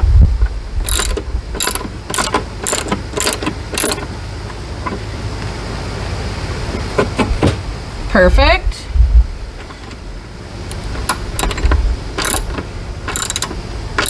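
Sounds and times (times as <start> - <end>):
steady low rumble: 0.0 - 14.0
socket ratchet strokes: 0.8 - 4.2, 10.7 - 14.0.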